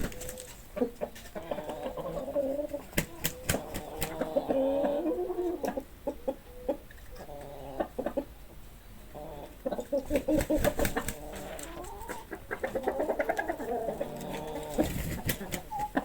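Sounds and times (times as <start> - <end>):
chickens clucking: 0.0 - 16.0.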